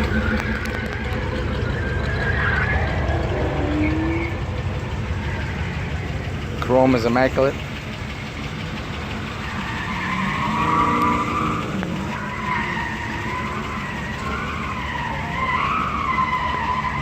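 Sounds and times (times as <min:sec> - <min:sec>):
car engine rumbling: 0:00.0 - 0:17.0
car tires squealing: 0:00.0 - 0:17.0.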